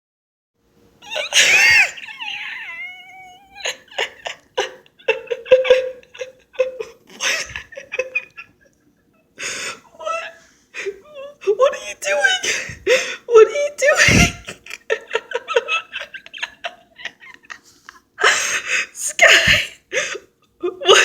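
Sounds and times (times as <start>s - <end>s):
bird laughter bursts: 1.1s - 3.7s
bird screeching: 1.1s - 3.7s.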